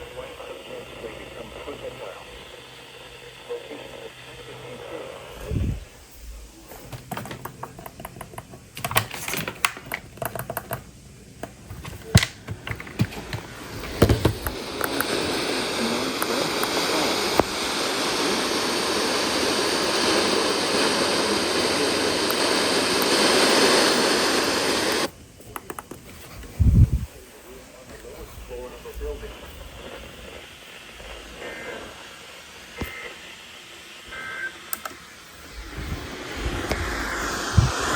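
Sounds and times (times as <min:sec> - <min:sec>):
radio static hiss: 0:00.0 - 0:37.9
scattered clicks: 0:25.5 - 0:26.0, 0:34.7 - 0:35.0.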